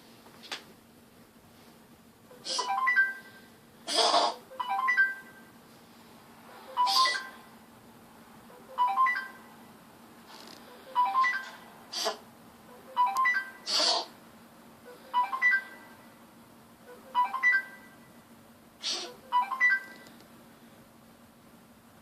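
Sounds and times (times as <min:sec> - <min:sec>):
electronic ringtone melody: 0:02.6 - 0:03.5, 0:04.4 - 0:05.5, 0:06.5 - 0:07.5, 0:08.5 - 0:09.6, 0:10.6 - 0:11.7, 0:12.7 - 0:13.7, 0:14.9 - 0:16.1, 0:16.8 - 0:18.2, 0:19.1 - 0:20.1.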